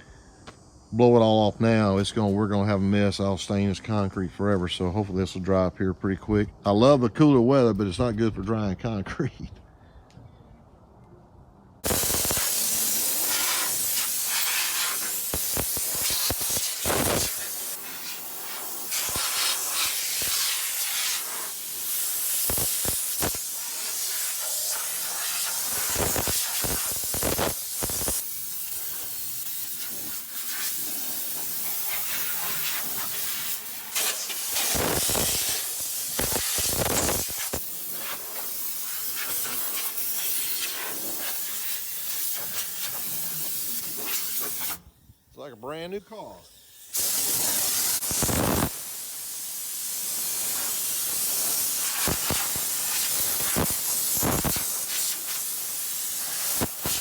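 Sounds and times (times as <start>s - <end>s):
compressed air blow gun hissing: 11.8s - 45.0s, 46.1s - 57.0s.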